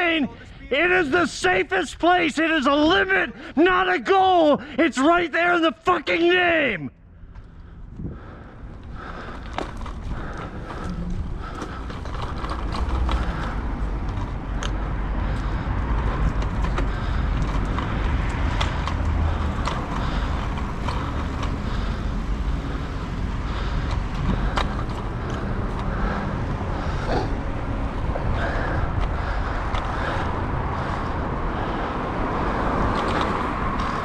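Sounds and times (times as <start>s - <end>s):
road traffic noise: 0.0s - 34.0s
bicycle clicks and rattles: 7.3s - 34.0s
wind rumble on microphone: 7.6s - 34.0s.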